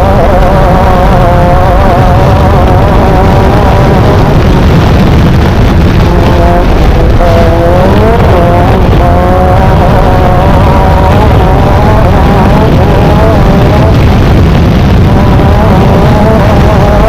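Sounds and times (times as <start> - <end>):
race vehicle engine running hard: 0.0 - 17.0
rumble and buffeting: 0.0 - 17.0.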